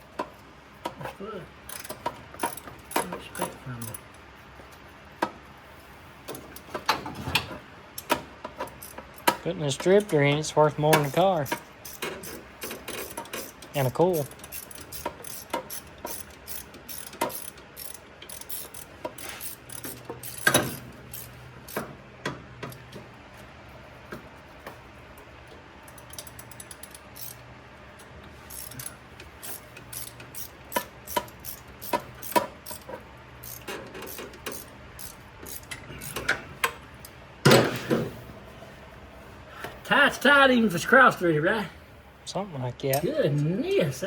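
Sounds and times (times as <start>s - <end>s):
ratchet wrench clicking: 1.6s - 4.0s, 8.0s - 10.2s, 10.9s - 21.9s, 25.8s - 27.4s, 28.0s - 37.2s.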